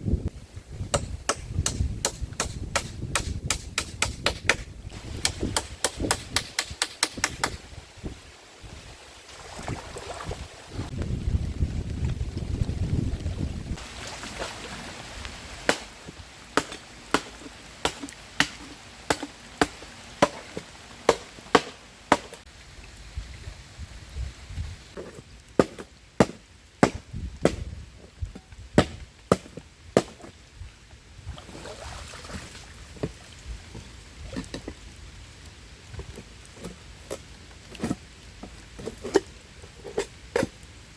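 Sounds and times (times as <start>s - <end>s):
blade chopping bamboo: 1.0s - 7.6s, 15.7s - 16.0s, 16.6s - 22.4s, 25.6s - 27.7s, 28.8s - 30.2s.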